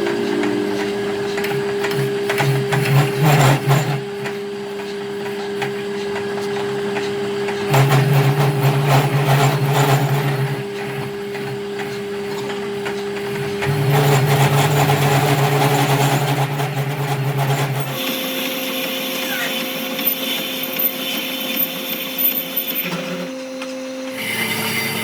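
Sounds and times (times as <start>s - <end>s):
electric motor humming: 0.0s - 2.6s, 17.7s - 25.0s
tool working on metal: 0.0s - 25.0s.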